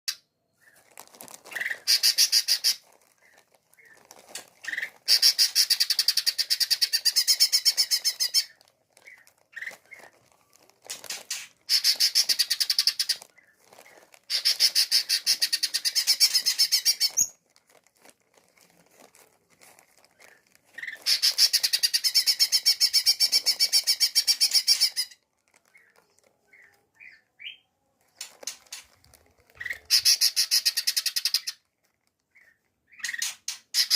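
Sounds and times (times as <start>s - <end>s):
bird chips: 0.1s - 33.9s
bird rattling trills: 1.5s - 3.9s, 4.6s - 10.1s, 10.9s - 13.2s, 14.3s - 17.4s, 20.7s - 25.2s, 29.6s - 31.6s.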